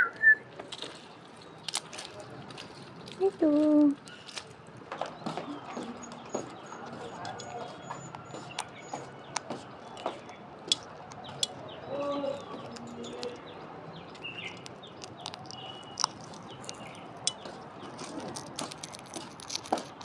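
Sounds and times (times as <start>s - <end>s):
beak clicking at food: 1.4s - 3.2s, 5.2s - 20.0s
parakeet chirping: 5.5s - 19.8s.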